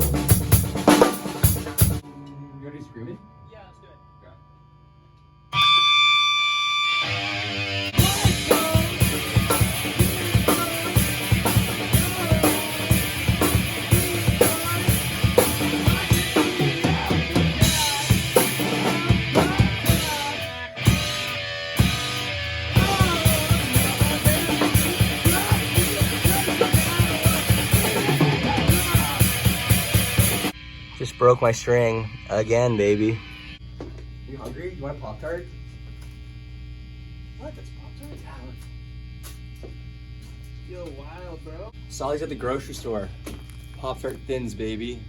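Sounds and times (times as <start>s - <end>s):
drum kit pounding: 0.0s - 2.1s, 8.0s - 30.6s
electric guitar: 5.5s - 33.2s.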